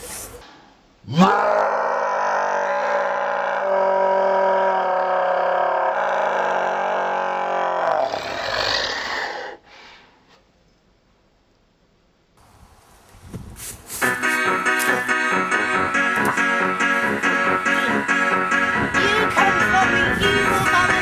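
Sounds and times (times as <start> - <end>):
man screaming: 1.1 - 8.6.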